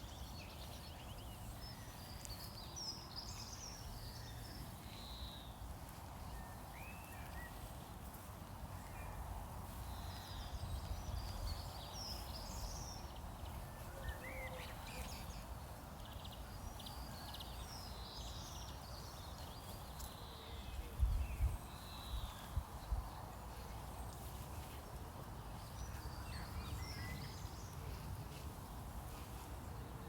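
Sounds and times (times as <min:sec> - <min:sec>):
songbirds chirping and singing: 0:00.0 - 0:30.0.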